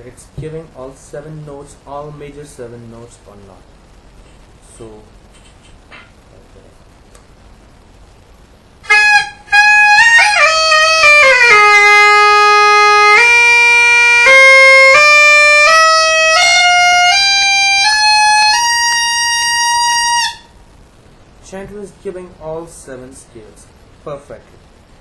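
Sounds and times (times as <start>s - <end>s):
bagpipe chanter playing scale: 8.8s - 20.5s.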